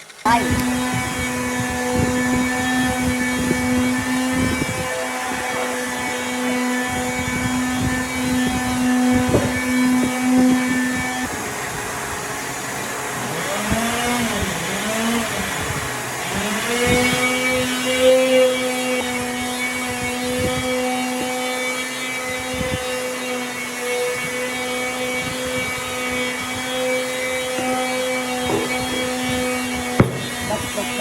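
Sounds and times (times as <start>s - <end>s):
power tool motor running: 0.0s - 31.0s
knocks: 28.4s - 29.1s, 30.0s - 30.6s.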